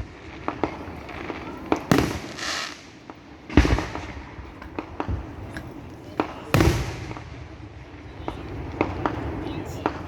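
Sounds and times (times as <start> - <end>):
small firework pops: 0.0 - 7.4, 8.2 - 10.0
fireworks crackling: 0.0 - 10.0
loud firework bang: 3.5 - 4.3.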